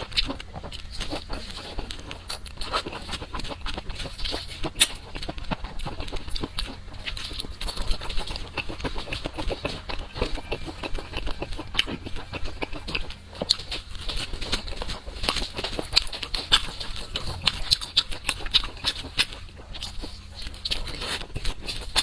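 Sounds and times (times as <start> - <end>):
chewing and crunching food: 0.0 - 22.0.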